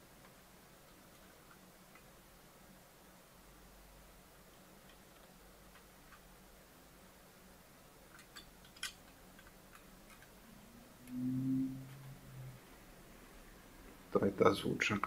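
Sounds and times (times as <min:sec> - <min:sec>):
low hum: 0:09.8 - 0:14.2.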